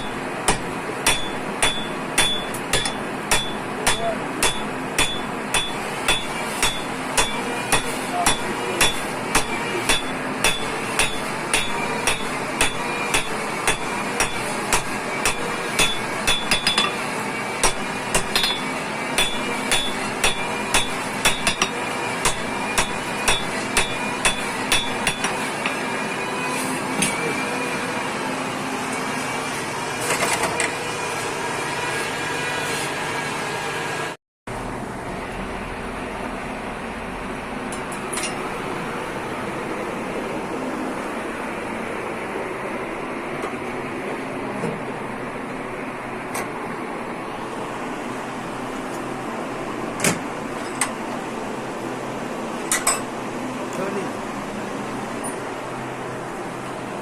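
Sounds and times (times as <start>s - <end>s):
hammer striking steel: 0.0s - 25.8s
workshop machine hum: 0.0s - 57.0s.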